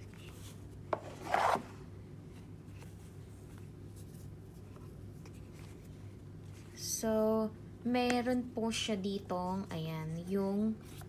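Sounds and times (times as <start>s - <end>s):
packaging pulled open: 1.1s - 1.7s.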